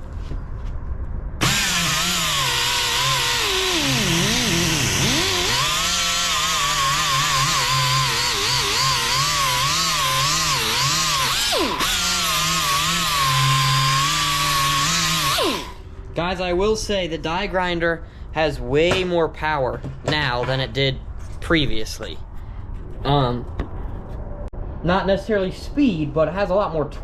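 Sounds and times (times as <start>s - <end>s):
pneumatic die grinder whining: 1.4s - 15.8s.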